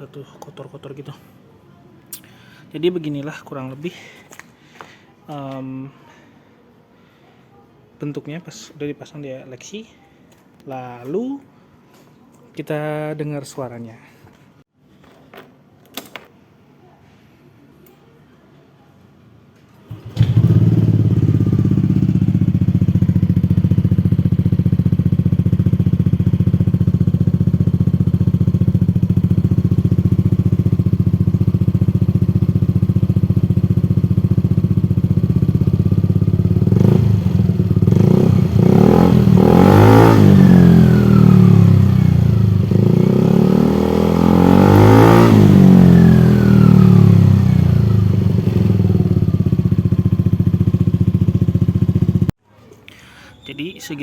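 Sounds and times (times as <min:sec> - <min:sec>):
scooter engine idling and revving: 0:19.9 - 0:52.4.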